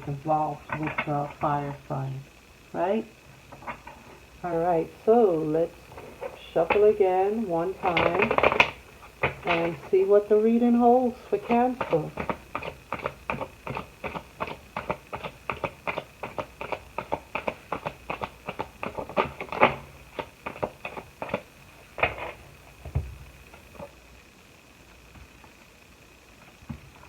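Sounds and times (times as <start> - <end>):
cards being shuffled: 4.9 - 23.9.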